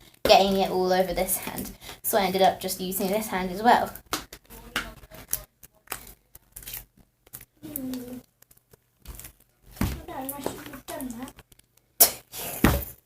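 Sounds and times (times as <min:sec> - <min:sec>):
sticky slime crackling and tearing: 0:04.4 - 0:09.5.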